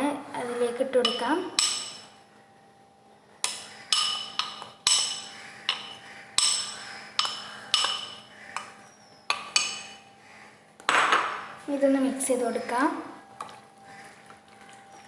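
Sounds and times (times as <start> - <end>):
spoon tapping against bowl: 1.0 - 2.0, 3.4 - 8.7.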